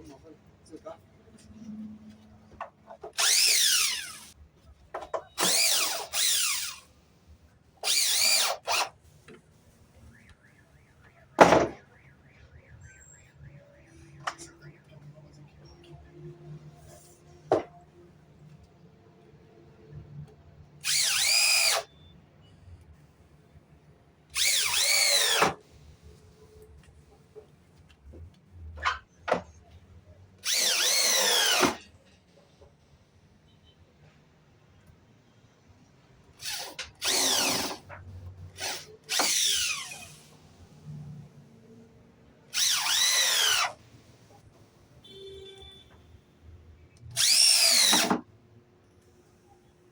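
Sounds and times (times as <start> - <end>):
power drill whining: 3.1 - 4.4, 5.4 - 6.9, 7.8 - 9.0, 20.8 - 21.9, 24.4 - 25.6, 30.4 - 31.8, 36.4 - 37.9, 38.5 - 40.4, 42.5 - 44.2, 47.2 - 48.2.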